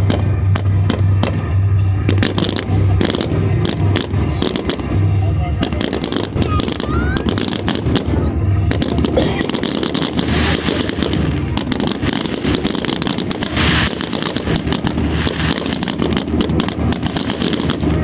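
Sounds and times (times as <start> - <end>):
fireworks bangs and crackling: 9.9 - 18.0.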